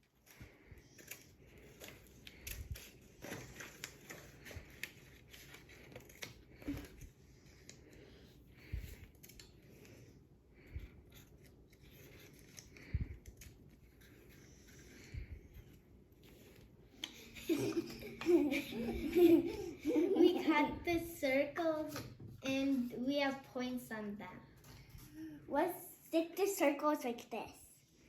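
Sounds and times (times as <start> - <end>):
scissors snipping paper: 0.0 - 8.0, 11.0 - 15.0
paper rustling: 0.0 - 10.1, 11.0 - 20.3.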